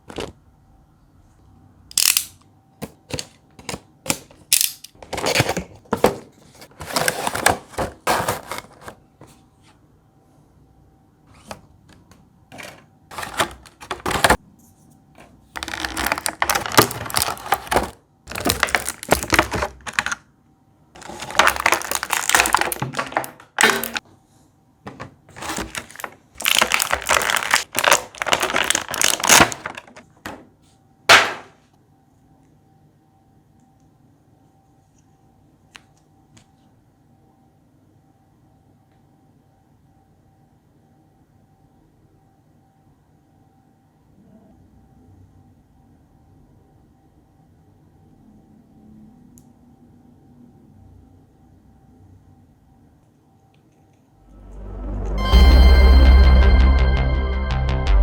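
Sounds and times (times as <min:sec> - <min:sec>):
packaging rustling and scraping: 0:04.6 - 0:09.4, 0:12.5 - 0:20.2, 0:21.0 - 0:24.0, 0:25.3 - 0:30.4.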